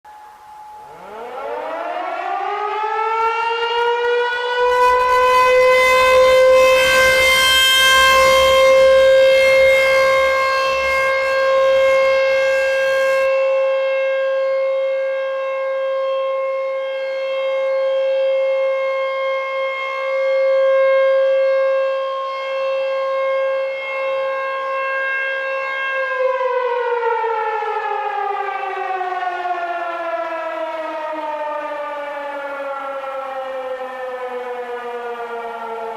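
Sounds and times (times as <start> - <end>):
siren winding up and down: 0.8 - 13.8.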